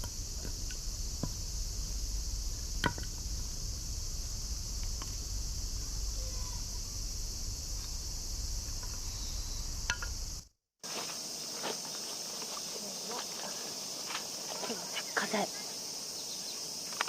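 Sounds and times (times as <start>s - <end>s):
wind rumble on microphone: 0.0s - 10.4s
cicadas buzzing: 0.0s - 17.0s.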